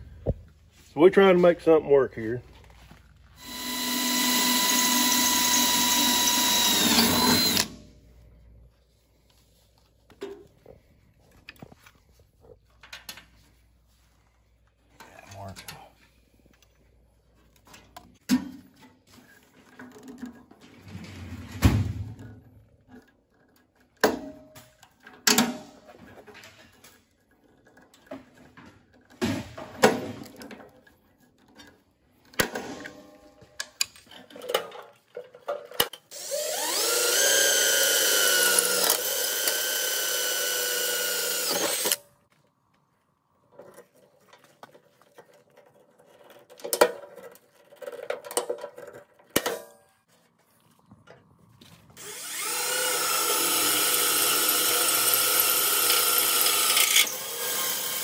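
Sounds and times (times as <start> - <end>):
electric drill whining: 3.4 - 7.8, 36.1 - 42.0, 52.0 - 58.0
sheet metal and tools clanking: 17.5 - 36.1.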